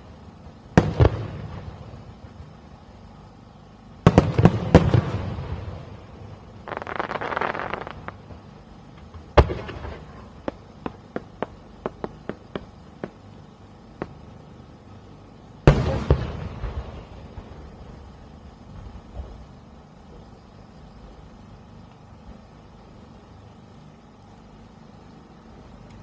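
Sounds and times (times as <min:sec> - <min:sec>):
fireworks bangs: 0:00.8 - 0:02.0, 0:04.0 - 0:06.0, 0:06.6 - 0:08.5, 0:09.2 - 0:13.3, 0:15.6 - 0:19.5
fireworks crackling: 0:04.0 - 0:14.4, 0:15.6 - 0:19.5
fireworks pops: 0:06.6 - 0:13.2, 0:14.0 - 0:14.3.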